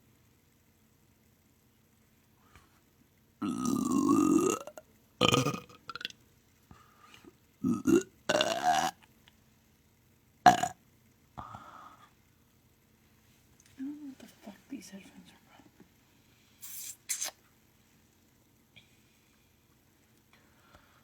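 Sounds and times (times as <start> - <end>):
person burping loudly: 3.4 - 6.1, 7.6 - 9.0, 10.4 - 10.8.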